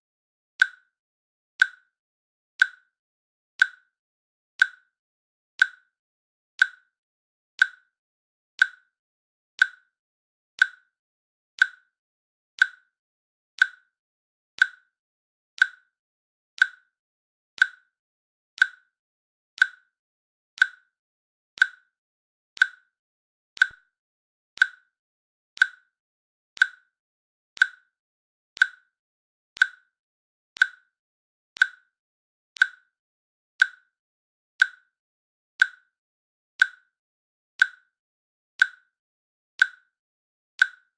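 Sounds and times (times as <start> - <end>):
synthetic timer clicks: 0.6 - 1.0, 1.6 - 2.0, 2.6 - 3.0, 3.6 - 4.0, 4.6 - 5.0, 5.6 - 6.0, 6.6 - 7.0, 7.6 - 8.0, 8.6 - 9.0, 9.6 - 10.0, 10.6 - 11.0, 11.6 - 12.0, 12.6 - 13.0, 13.6 - 14.0, 14.6 - 15.0, 15.6 - 16.0, 16.6 - 17.0, 17.6 - 18.0, 18.6 - 19.0, 19.6 - 20.0, 20.6 - 21.0, 21.6 - 22.0, 22.6 - 23.0, 23.6 - 24.0, 24.6 - 25.0, 25.6 - 26.0, 26.6 - 27.0, 27.6 - 28.0, 28.6 - 29.0, 29.6 - 30.0, 30.6 - 31.0, 31.6 - 32.0, 32.6 - 33.0, 33.6 - 34.0, 34.6 - 35.0, 35.6 - 36.0, 36.6 - 37.0, 37.6 - 38.0, 38.6 - 39.0, 39.6 - 40.0, 40.6 - 40.9.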